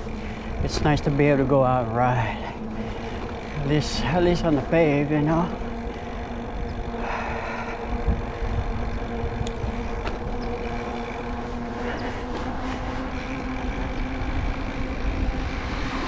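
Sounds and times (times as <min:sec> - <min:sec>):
bike tyres on wet pavement: 0:00.0 - 0:16.0
low hum of road traffic: 0:00.0 - 0:16.0
wind buffeting microphone: 0:00.0 - 0:16.0
faint ticks: 0:08.1 - 0:10.7.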